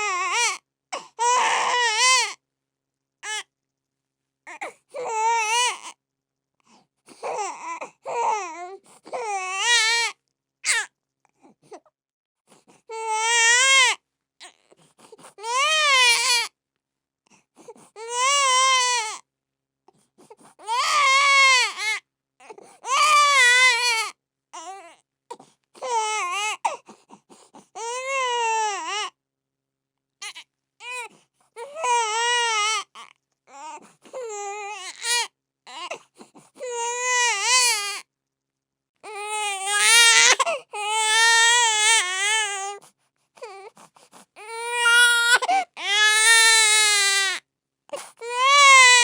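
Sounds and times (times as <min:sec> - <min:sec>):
baby crying: 0:00.0 - 0:02.4, 0:03.2 - 0:03.4, 0:04.5 - 0:05.9, 0:07.2 - 0:10.9, 0:12.9 - 0:14.0, 0:15.4 - 0:16.5, 0:18.0 - 0:19.2, 0:20.6 - 0:25.0, 0:25.8 - 0:26.8, 0:27.8 - 0:29.1, 0:30.2 - 0:36.0, 0:36.6 - 0:38.0, 0:39.0 - 0:42.8, 0:44.4 - 0:49.0.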